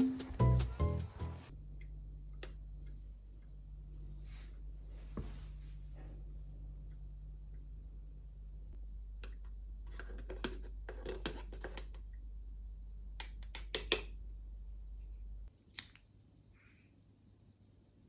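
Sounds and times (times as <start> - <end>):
sharp click: 15.5 - 16.1.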